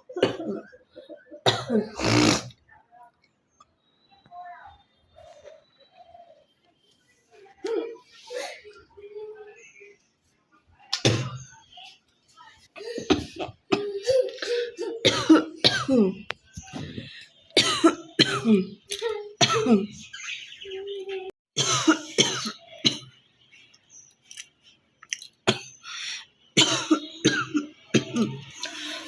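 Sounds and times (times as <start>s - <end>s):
woman coughing: 0.1s - 2.5s, 12.8s - 16.2s, 17.6s - 18.8s, 19.4s - 20.1s, 21.6s - 23.1s, 26.6s - 28.5s
woman clearing throat: 1.4s - 2.5s.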